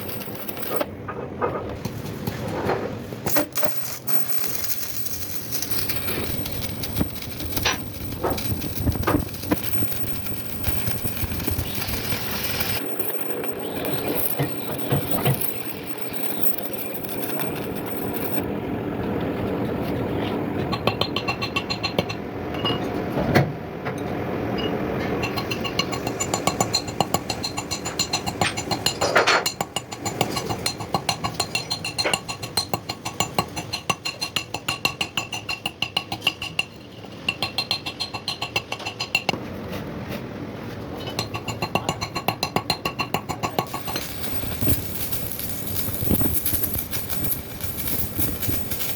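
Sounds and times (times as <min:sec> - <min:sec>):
workshop machine running: 0:00.0 - 0:20.5, 0:43.5 - 0:48.9
fast metallic ticking with ring: 0:03.3 - 0:18.5, 0:25.3 - 0:35.8, 0:41.3 - 0:48.9.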